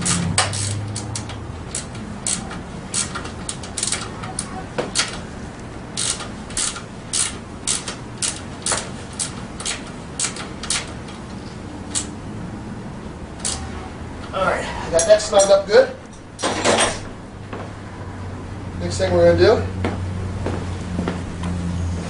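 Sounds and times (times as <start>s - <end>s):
socket ratchet clicking: 0.0s - 12.2s, 13.4s - 13.6s.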